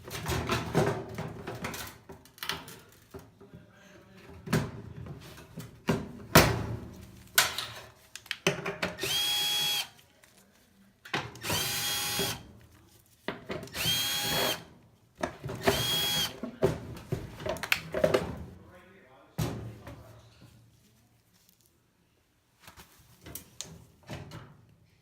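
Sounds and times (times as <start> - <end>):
power drill motor whine: 9.0 - 9.9, 11.4 - 12.4, 13.7 - 14.6, 15.6 - 16.3.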